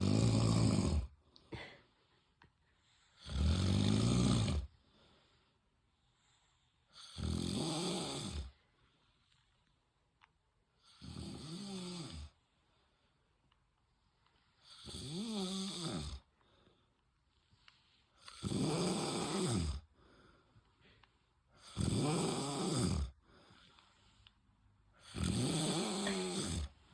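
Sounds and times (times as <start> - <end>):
man snoring: 0.0 - 1.7, 3.2 - 4.7, 6.9 - 8.6, 10.8 - 12.3, 14.6 - 16.3, 18.2 - 19.8, 21.6 - 23.2, 25.0 - 26.9.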